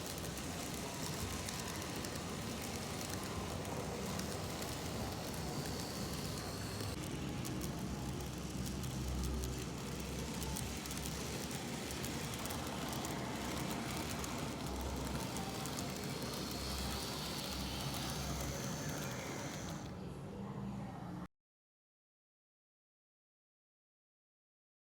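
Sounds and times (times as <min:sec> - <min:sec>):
rapid ticking and crackle: 0:00.0 - 0:19.9
train rumbling on track: 0:00.0 - 0:19.9.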